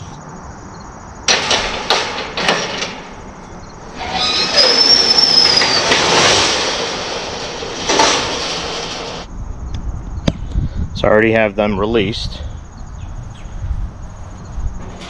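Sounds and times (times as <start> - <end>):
metal clank: 1.3 - 9.3
metal tailgate scraping and squealing: 1.3 - 9.3, 14.8 - 15.0.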